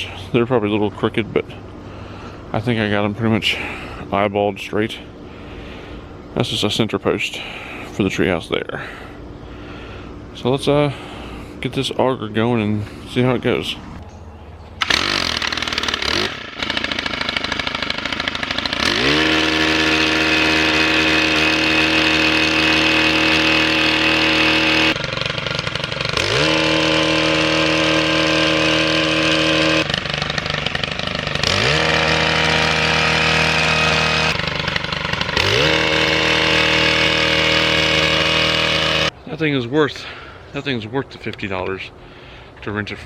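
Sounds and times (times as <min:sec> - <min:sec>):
auger engine revving: 0:14.8 - 0:39.2.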